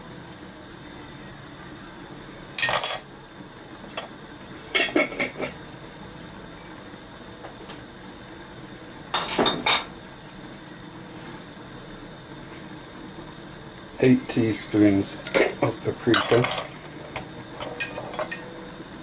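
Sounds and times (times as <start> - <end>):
spoon clinking against a container: 16.1 - 16.7.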